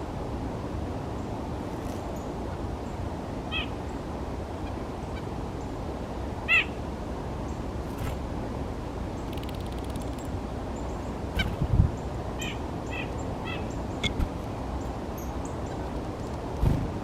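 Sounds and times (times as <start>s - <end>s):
low background rumble: 10.1s - 17.0s
nuthatch nasal calls: 12.4s - 14.3s.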